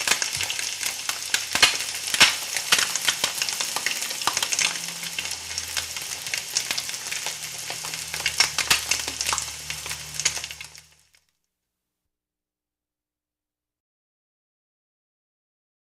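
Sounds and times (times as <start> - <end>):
food sizzling with spitting pops: 0.0 - 11.2.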